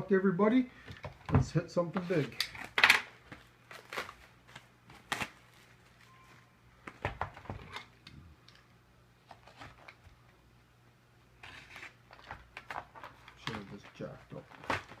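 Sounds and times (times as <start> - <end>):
cardboard box wrapping crinkling and tearing: 3.7 - 4.3.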